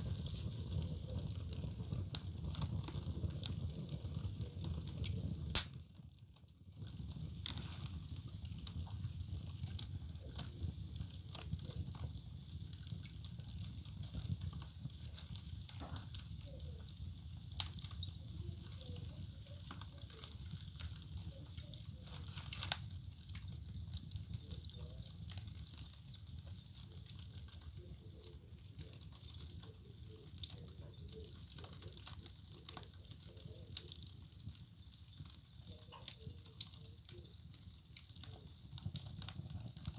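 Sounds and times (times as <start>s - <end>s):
fire crackling and popping: 0.0s - 39.9s.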